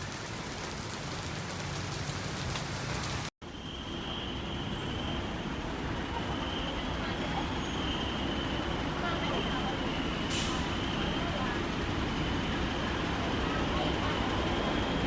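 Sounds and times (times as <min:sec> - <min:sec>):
rain hissing: 0:00.0 - 0:03.3
street traffic noise: 0:00.0 - 0:15.0.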